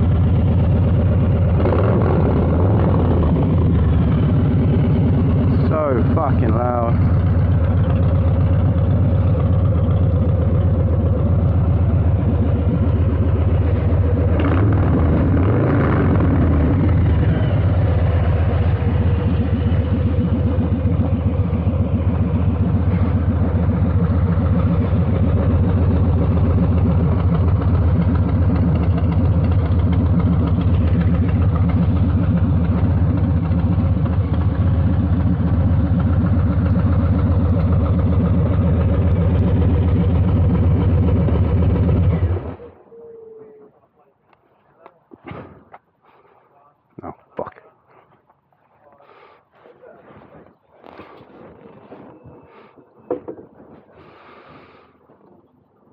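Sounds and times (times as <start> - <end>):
motorcycle engine running: 0.0 - 42.8.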